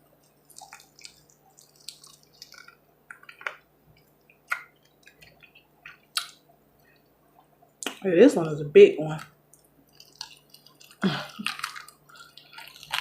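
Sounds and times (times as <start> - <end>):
wet chewing mouth sounds: 0.2 - 8.0, 9.5 - 13.0.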